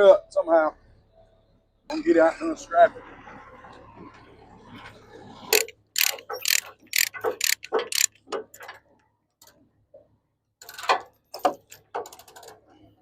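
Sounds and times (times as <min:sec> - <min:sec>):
ratchet strap clicking: 0:05.5 - 0:08.2.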